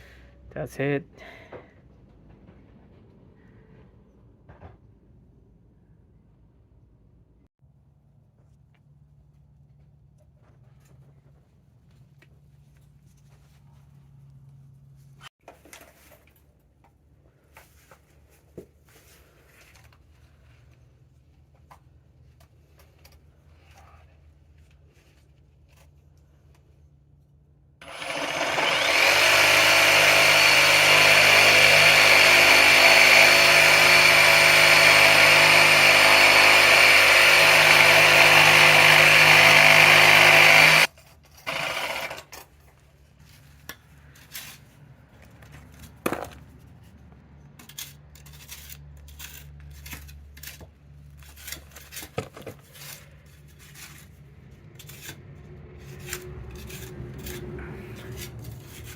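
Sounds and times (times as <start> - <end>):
power tool running: 27.8 - 42.3.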